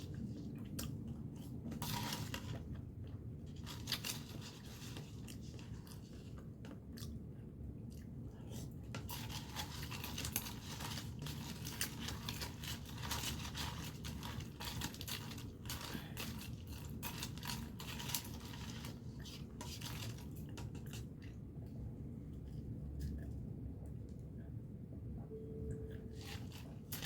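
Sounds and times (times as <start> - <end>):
spoon scraping shaved ice: 1.8 - 2.6, 9.0 - 21.1, 26.1 - 27.0.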